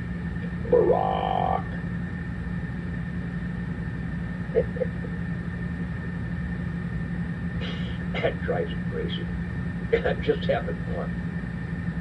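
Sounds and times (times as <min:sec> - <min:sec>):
steady low hum: 0:00.0 - 0:12.0
man belching a word: 0:00.7 - 0:01.8, 0:04.6 - 0:05.0.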